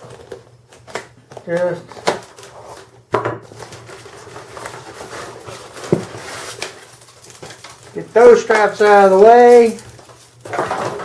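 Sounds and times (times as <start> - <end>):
cardboard box rustling: 3.5 - 11.0.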